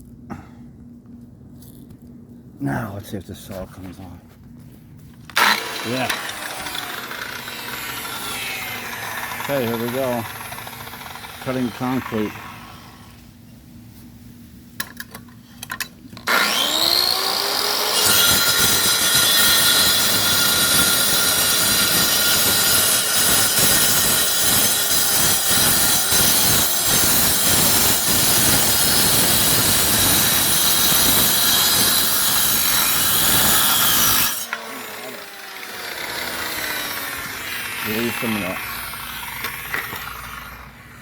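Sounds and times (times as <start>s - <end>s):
saw blade grinding concrete: 5.3s - 13.1s, 16.2s - 41.0s
electric saw whining: 5.3s - 13.2s, 16.2s - 41.0s.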